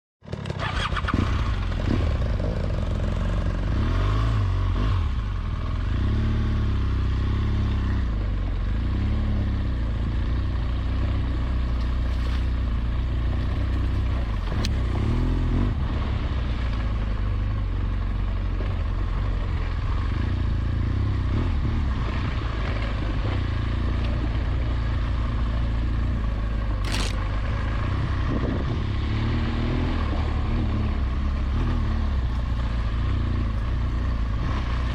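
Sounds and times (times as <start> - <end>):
motorcycle engine revving: 0.2 - 34.9
bike scraping and clattering: 11.7 - 15.2.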